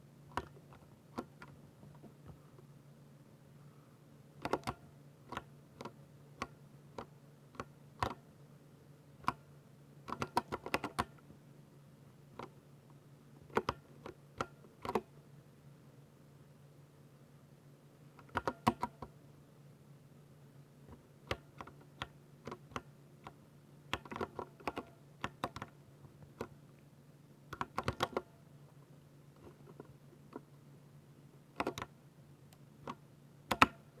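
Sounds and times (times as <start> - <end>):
mechanical keyboard typing: 4.4 - 8.2, 10.1 - 11.2, 13.4 - 13.8, 14.4 - 15.0, 18.2 - 19.0, 23.9 - 25.8, 27.6 - 28.3, 31.6 - 31.9, 32.8 - 33.8.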